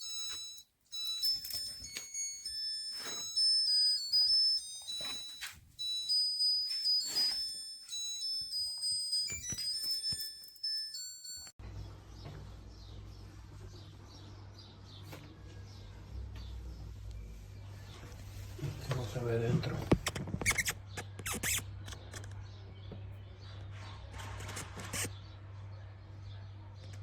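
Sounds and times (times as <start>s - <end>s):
electronic beeping melody: 0.0s - 11.5s.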